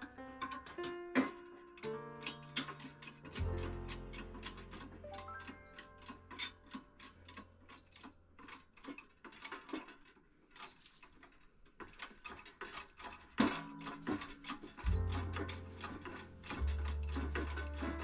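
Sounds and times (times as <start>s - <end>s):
metallic clicking and ratcheting: 0.0s - 18.0s.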